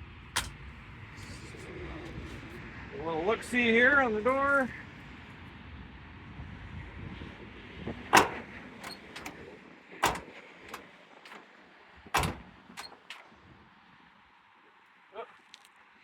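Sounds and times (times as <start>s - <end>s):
door latch clicks: 8.1s - 11.5s, 12.1s - 13.3s
car door shutting: 8.1s - 13.3s.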